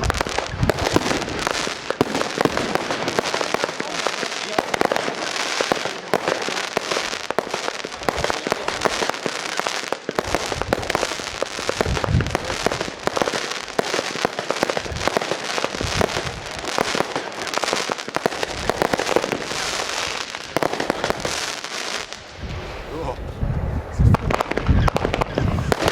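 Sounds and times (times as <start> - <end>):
deep firework booms: 0.0 - 25.9
fireworks crackles and bangs: 0.0 - 25.9.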